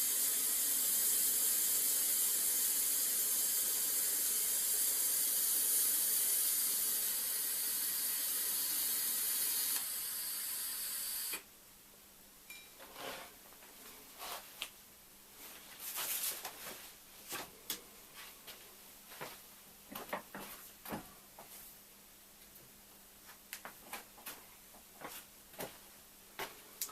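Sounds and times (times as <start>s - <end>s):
welding arc hissing: 0.0s - 11.4s.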